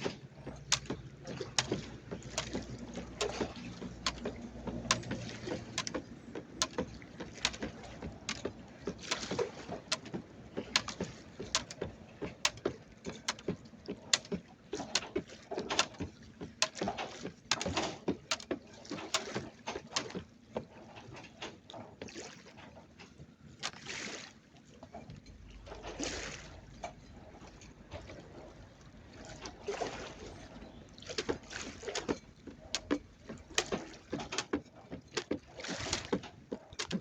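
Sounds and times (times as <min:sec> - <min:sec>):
moving water: 0:00.0 - 0:37.0
jump rope slapping the ground: 0:02.4 - 0:15.2.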